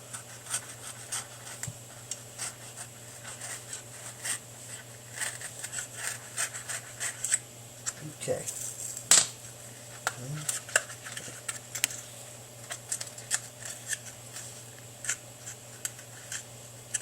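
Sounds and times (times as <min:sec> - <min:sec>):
knife cutting speaker paper cone: 0:00.0 - 0:08.0.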